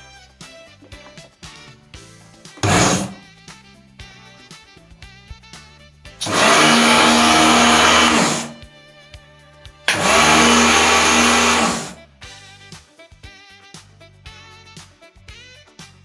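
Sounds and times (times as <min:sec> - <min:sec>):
pressure washer motor hum: 0:02.6 - 0:03.2, 0:06.2 - 0:08.6, 0:09.9 - 0:12.0
pressure washer spray hiss: 0:02.6 - 0:03.2, 0:06.2 - 0:08.6, 0:09.9 - 0:12.0.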